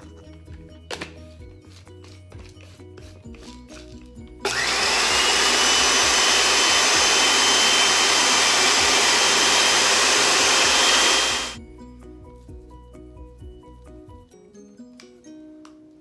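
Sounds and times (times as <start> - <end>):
blender motor whining: 4.4 - 11.6.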